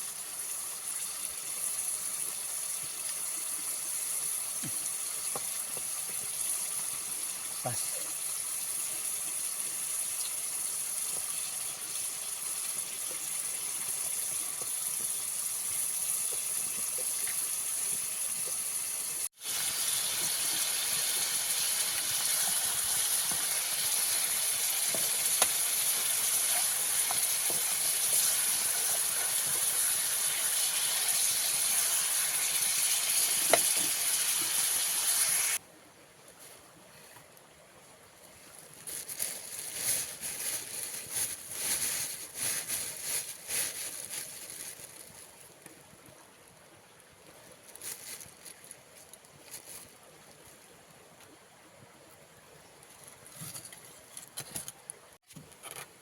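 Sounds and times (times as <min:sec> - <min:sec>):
food sizzling in a pan: 0:00.0 - 0:35.6.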